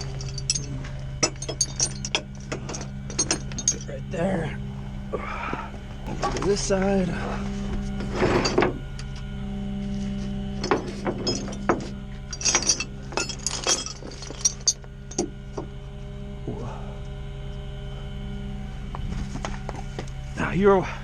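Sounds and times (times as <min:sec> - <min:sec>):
metal chain clinking: 0:00.0 - 0:04.0, 0:08.2 - 0:08.8, 0:10.6 - 0:15.3
truck engine droning: 0:00.0 - 0:21.0.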